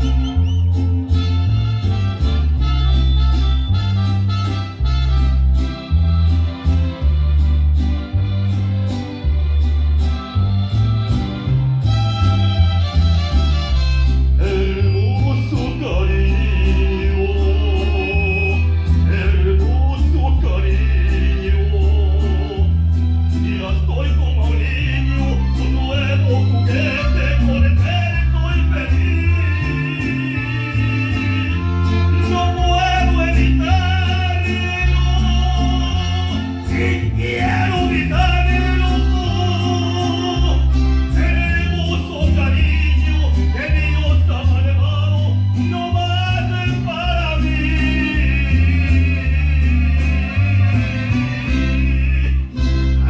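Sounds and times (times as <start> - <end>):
guitar: 0.0 - 53.0
heavy bass line: 0.0 - 53.0
person singing: 14.4 - 22.7, 23.5 - 52.7.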